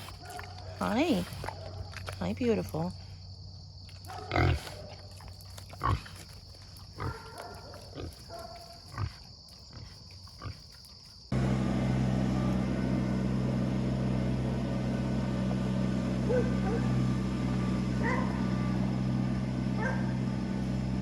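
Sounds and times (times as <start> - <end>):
farm animal grunting: 4.1 - 10.7
loud low rumbling noise: 11.3 - 21.0.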